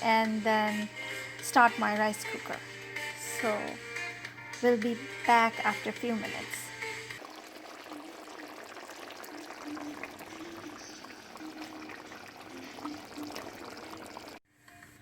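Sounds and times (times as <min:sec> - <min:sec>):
water running: 0:04.6 - 0:14.4.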